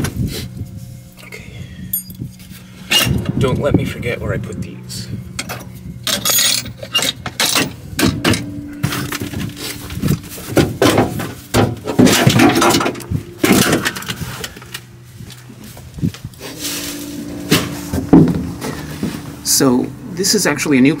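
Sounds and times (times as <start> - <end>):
faint low hum: 0.0 - 21.0
hard objects clattering: 5.5 - 14.9.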